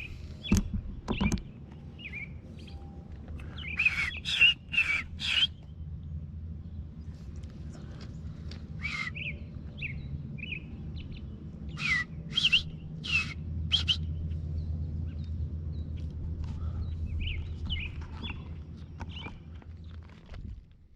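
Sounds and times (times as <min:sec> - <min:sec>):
robin chirping: 0:00.0 - 0:05.8, 0:08.8 - 0:15.9
low rumble: 0:00.0 - 0:20.9.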